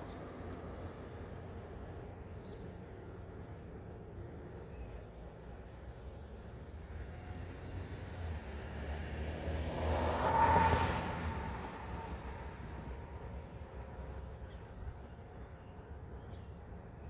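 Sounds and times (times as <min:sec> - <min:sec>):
car passing by: 0:06.9 - 0:14.3.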